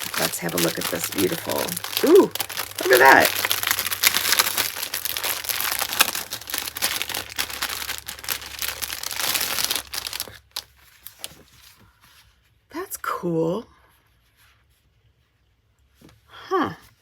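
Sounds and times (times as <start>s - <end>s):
packaging crinkling and rustling: 0.0s - 11.9s.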